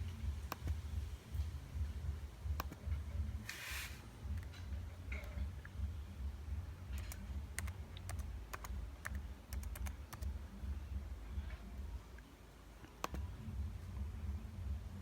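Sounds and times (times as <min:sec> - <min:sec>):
steady low hum: 0:00.0 - 0:15.0
laptop keyboard typing: 0:02.5 - 0:02.9, 0:06.9 - 0:10.4, 0:12.8 - 0:13.3.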